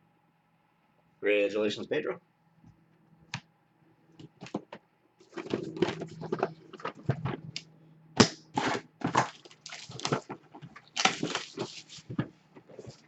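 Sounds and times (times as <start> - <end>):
card packaging rustling: 5.2 - 7.6, 8.6 - 13.0.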